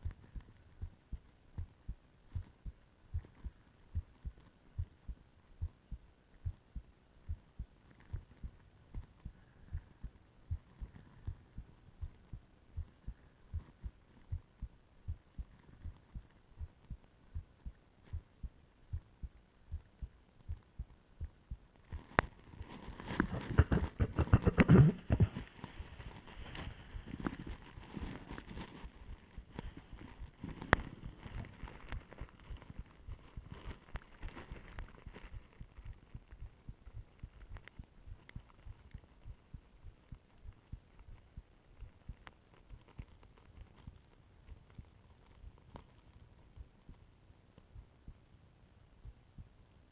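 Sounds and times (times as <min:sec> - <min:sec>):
heartbeat thumps through stethoscope: 0:00.0 - 0:42.2
stethoscope rubbing: 0:22.0 - 0:35.4.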